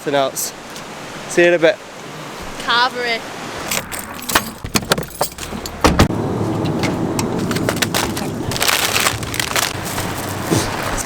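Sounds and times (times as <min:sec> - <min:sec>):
car rumble: 0:02.4 - 0:11.0
crunching clicks: 0:07.2 - 0:11.0.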